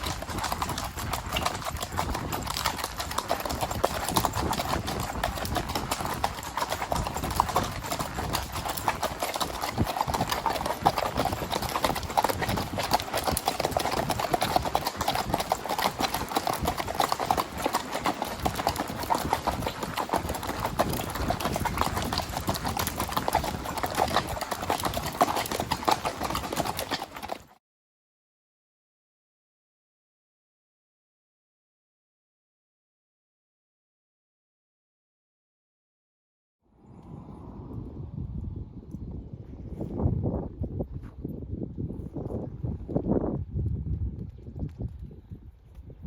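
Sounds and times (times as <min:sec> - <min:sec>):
horse hooves clip-clopping: 0:00.0 - 0:27.6, 0:41.0 - 0:46.0.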